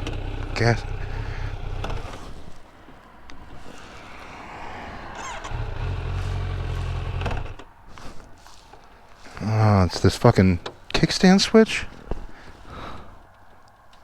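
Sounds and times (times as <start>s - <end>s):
motorcycle engine running: 0.0s - 2.5s, 4.0s - 7.7s.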